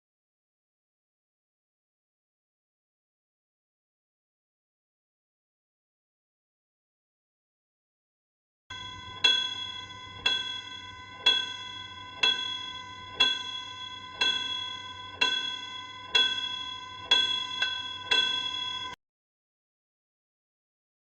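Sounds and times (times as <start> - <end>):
bell ringing: 8.7 - 19.0.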